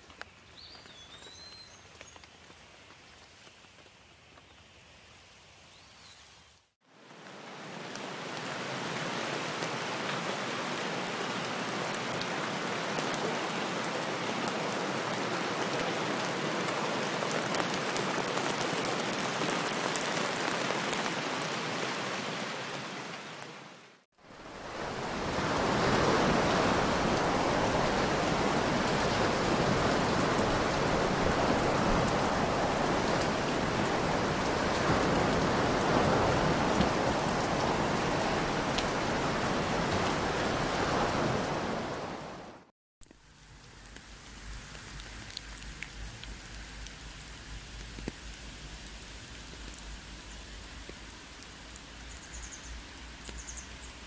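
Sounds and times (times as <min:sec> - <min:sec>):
steady rain falling: 0:00.0 - 0:54.0.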